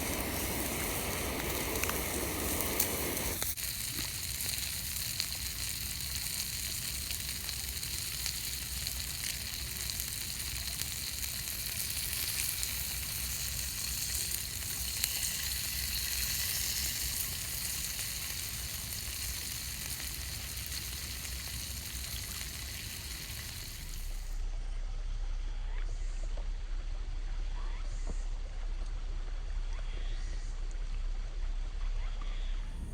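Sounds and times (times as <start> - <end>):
meat sizzling on a grill: 0.0 - 24.4.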